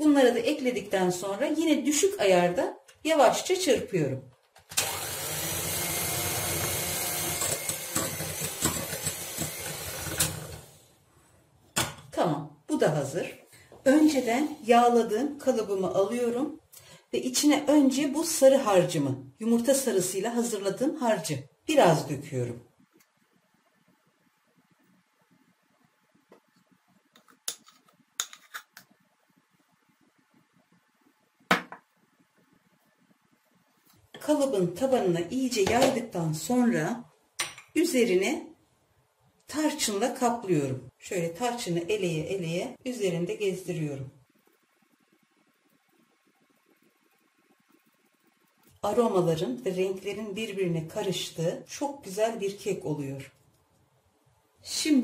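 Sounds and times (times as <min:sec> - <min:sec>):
electric hand mixer running: 0:04.8 - 0:10.8.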